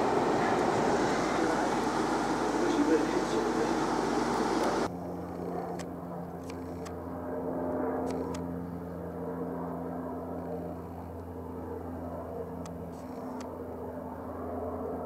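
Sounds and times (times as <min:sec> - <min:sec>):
steady motor hum: 0:00.0 - 0:05.9.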